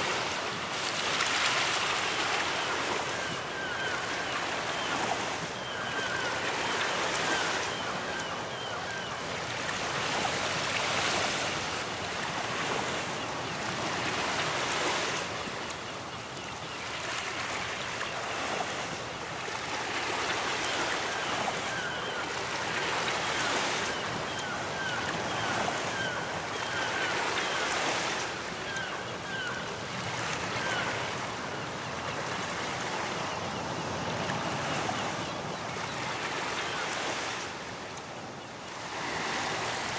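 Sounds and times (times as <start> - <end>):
ocean waves breaking: 0.0 - 15.8, 38.6 - 39.9.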